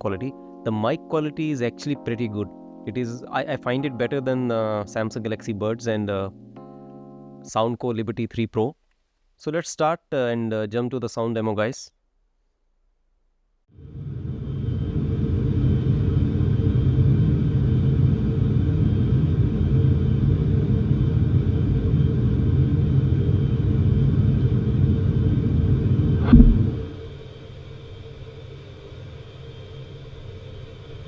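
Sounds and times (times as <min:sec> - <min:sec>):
airplane cabin rumble: 0:13.9 - 0:27.1
short thump: 0:26.2 - 0:26.9.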